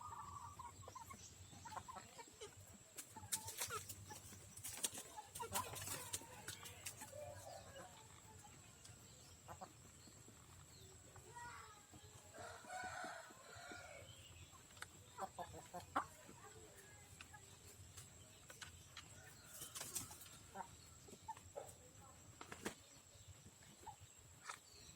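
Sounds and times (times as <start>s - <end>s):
faint chickens clucking: 0.0s - 24.9s
rooster crowing: 12.4s - 14.1s.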